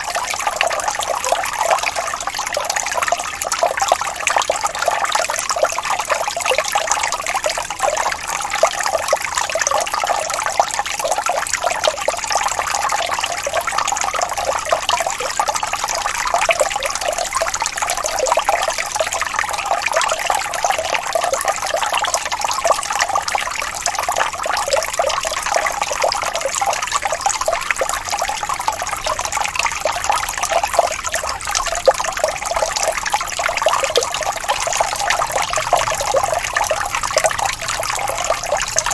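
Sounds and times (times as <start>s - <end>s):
fountain water splashing: 17.5s - 38.9s.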